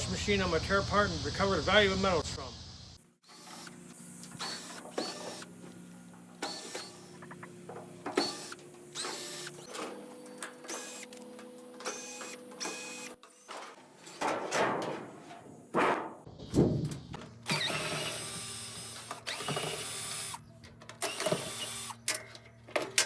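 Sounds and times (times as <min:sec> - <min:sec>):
small electric motor whirring: 0:03.2 - 0:05.7, 0:06.4 - 0:13.5, 0:17.4 - 0:20.4, 0:21.0 - 0:22.0.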